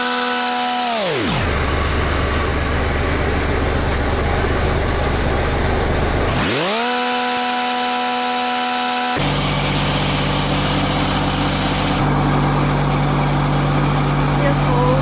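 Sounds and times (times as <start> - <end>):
generator engine idling: 1.4 - 6.6, 9.2 - 15.0.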